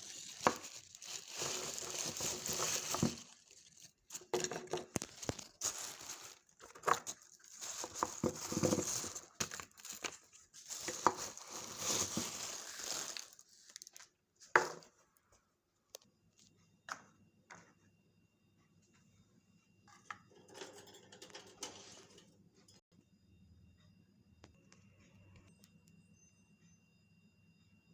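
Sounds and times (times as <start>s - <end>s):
crinkly packaging rustling: 0.0s - 14.9s.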